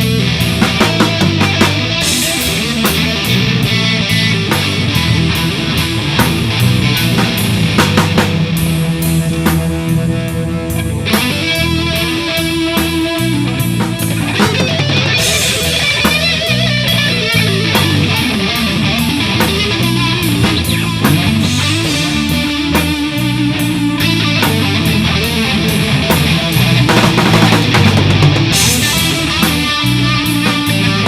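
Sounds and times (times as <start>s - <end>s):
bass guitar: 0.0s - 31.0s
drum kit: 0.0s - 31.0s
electric guitar: 0.0s - 31.0s.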